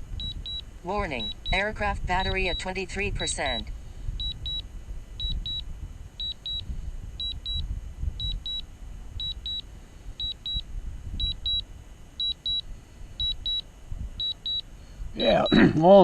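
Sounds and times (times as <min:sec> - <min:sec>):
wind rumble on microphone: 0:00.0 - 0:15.4
remote controller double beeps: 0:00.2 - 0:02.8, 0:04.2 - 0:04.6, 0:05.2 - 0:05.6, 0:06.2 - 0:06.6, 0:07.2 - 0:07.6, 0:08.2 - 0:08.6, 0:09.2 - 0:09.6, 0:10.2 - 0:10.6, 0:11.2 - 0:11.6, 0:12.2 - 0:12.6, 0:13.2 - 0:13.6, 0:14.2 - 0:14.6.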